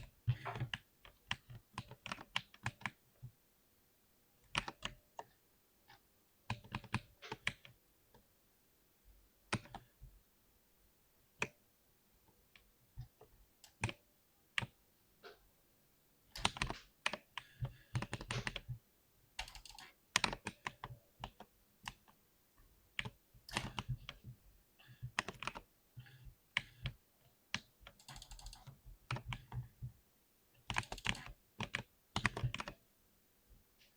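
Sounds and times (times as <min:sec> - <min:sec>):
typing on mechanical keyboard: 0:00.0 - 0:03.0, 0:04.4 - 0:05.2, 0:06.5 - 0:07.8, 0:16.4 - 0:18.8, 0:19.4 - 0:22.2, 0:23.0 - 0:24.2, 0:24.8 - 0:29.9, 0:30.6 - 0:32.8.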